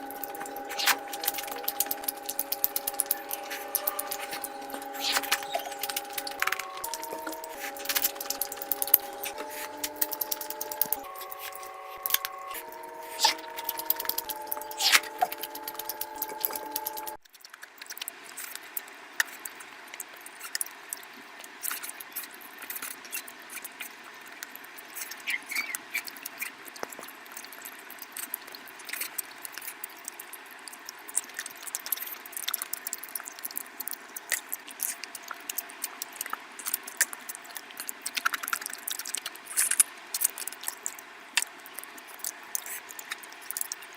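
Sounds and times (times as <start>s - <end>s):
background music simple melody: 0.0s - 17.2s
clicks: 0.0s - 17.2s
wet chewing sounds: 0.0s - 43.9s.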